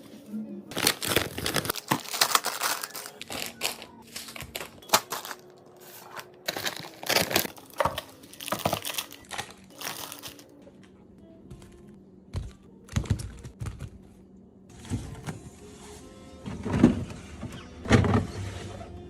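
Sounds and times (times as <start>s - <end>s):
plastic packaging crinkling: 0.7s - 10.5s.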